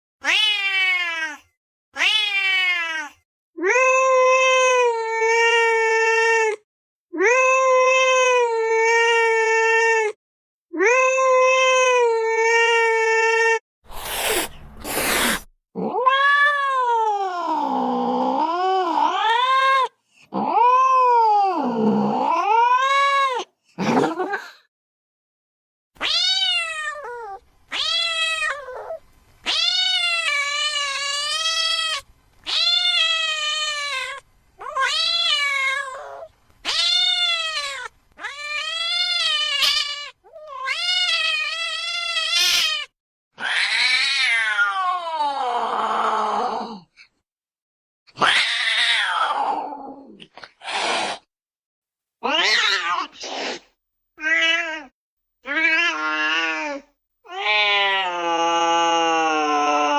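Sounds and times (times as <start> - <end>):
cat meowing: 0.2 - 17.8, 26.0 - 45.3, 48.2 - 50.1, 52.2 - 53.2, 54.2 - 59.9.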